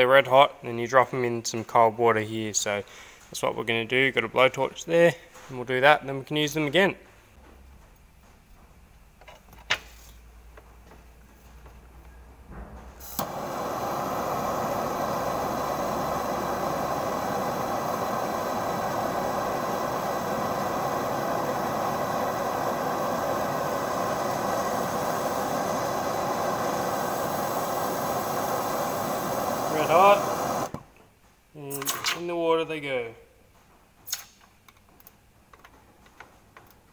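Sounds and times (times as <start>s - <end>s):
blowtorch flame hissing: 12.9s - 30.8s
blowtorch ignition click: 13.0s - 30.8s.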